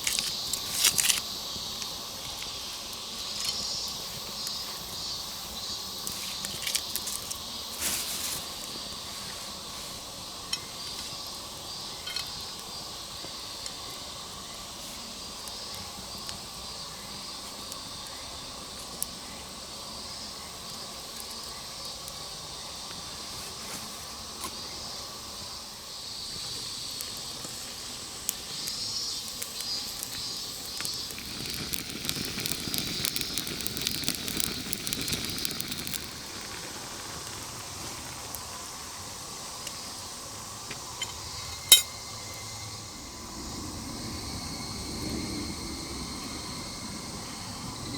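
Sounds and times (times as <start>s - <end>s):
campfire crackling and popping: 0.0s - 9.0s, 9.6s - 22.2s, 26.7s - 43.0s
steady high hiss: 0.0s - 47.9s.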